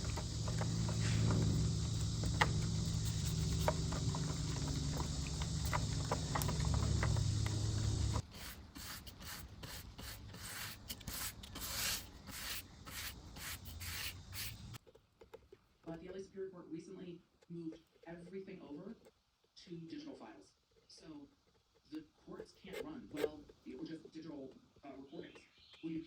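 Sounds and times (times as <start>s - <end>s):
small clicks and taps: 0.0s - 8.2s
rubbing strokes on wood: 0.0s - 14.8s
steady low hum: 0.0s - 14.8s.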